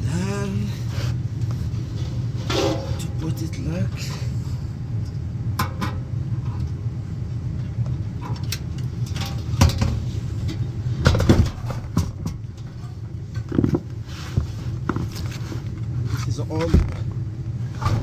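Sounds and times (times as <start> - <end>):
low machine hum: 0.0 - 18.0
parts knocking and clattering: 2.0 - 3.5, 5.0 - 6.8, 7.6 - 15.4, 16.1 - 18.0.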